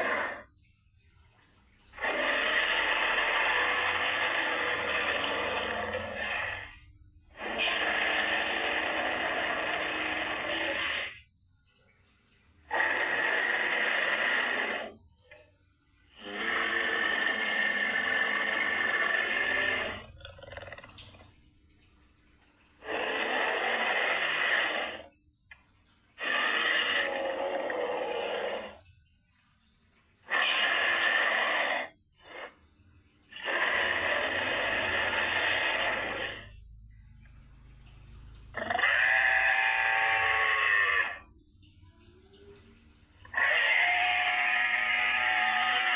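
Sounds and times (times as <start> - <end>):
rasping creature roars: 0.0 - 0.5, 1.9 - 6.8, 7.4 - 11.2, 12.7 - 15.0, 16.1 - 21.1, 22.8 - 25.1, 26.2 - 28.8, 30.3 - 32.5, 33.3 - 36.6, 38.5 - 41.3, 43.2 - 45.9.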